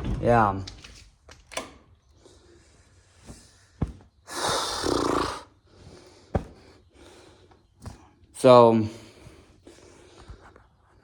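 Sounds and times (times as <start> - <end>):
person breathing out heavily: 4.3 - 7.5.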